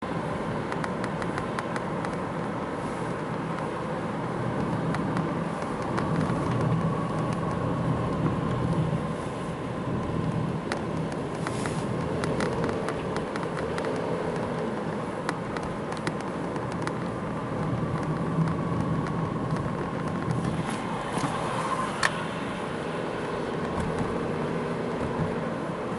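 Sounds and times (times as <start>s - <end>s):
car road noise: 0.0s - 25.9s.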